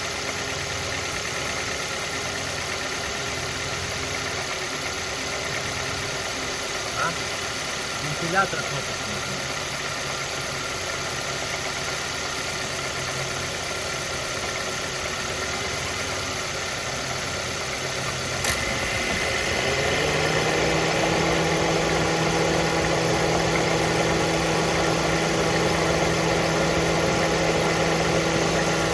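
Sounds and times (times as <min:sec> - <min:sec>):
car engine idling with knock: 0:00.0 - 0:28.9
cooling fan whining: 0:17.2 - 0:28.9.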